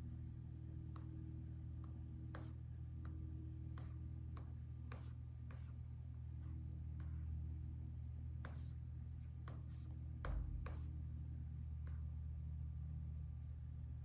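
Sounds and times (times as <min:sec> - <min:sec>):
steady low hum: 0:00.0 - 0:14.0
laptop keyboard taps: 0:10.3 - 0:10.9.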